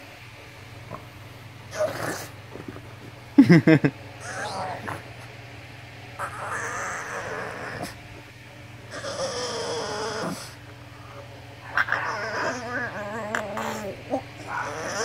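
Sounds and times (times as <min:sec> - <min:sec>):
dog whining and warbling: 0:04.2 - 0:05.0, 0:06.2 - 0:08.0, 0:11.6 - 0:15.0.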